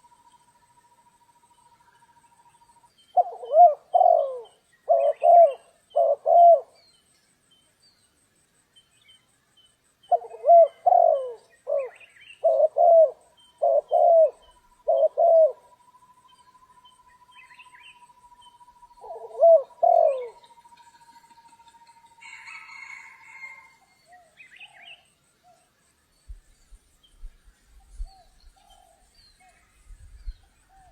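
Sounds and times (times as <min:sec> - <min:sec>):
dove cooing: 0:03.2 - 0:06.8, 0:10.1 - 0:15.8, 0:18.8 - 0:20.6.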